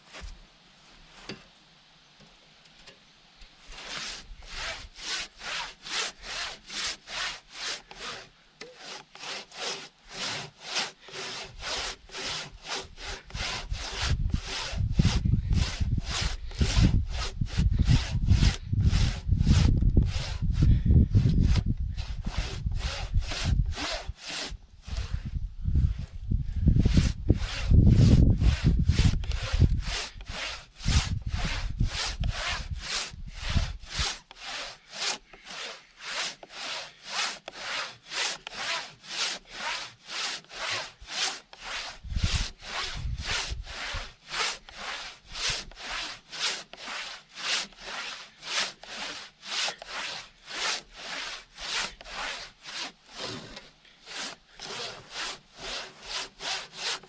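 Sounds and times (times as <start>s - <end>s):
handsaw ripping through log: 3.6s - 25.4s, 26.7s - 57.0s.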